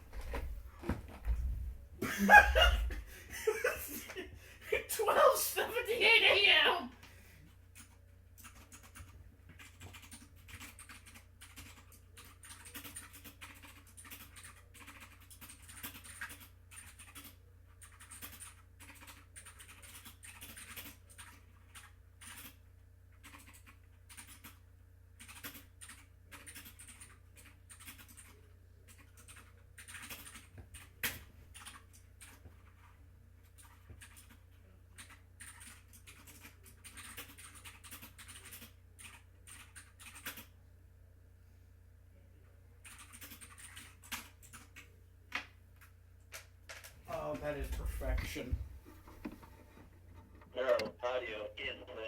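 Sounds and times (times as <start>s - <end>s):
faint electrical hum: 0.0s - 52.0s.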